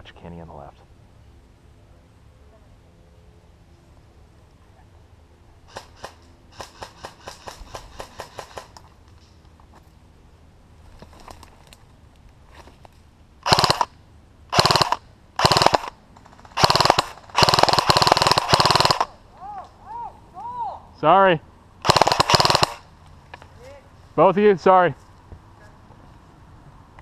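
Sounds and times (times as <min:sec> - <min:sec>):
airsoft rifle full-auto bursts: 0:05.7 - 0:08.8, 0:13.4 - 0:13.9, 0:14.5 - 0:19.2, 0:21.8 - 0:22.9
distant airsoft gun shots: 0:13.4 - 0:13.9, 0:14.5 - 0:19.2, 0:21.8 - 0:22.9.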